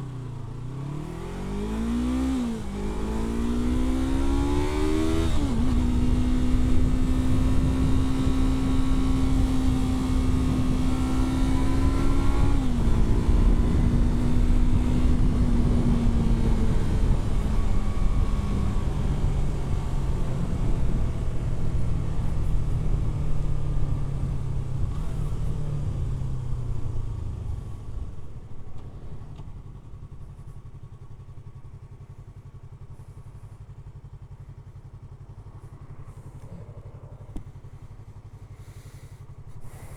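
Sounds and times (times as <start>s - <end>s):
motorcycle engine under way: 0.0s - 39.9s
motorcycle engine idling: 15.2s - 39.9s.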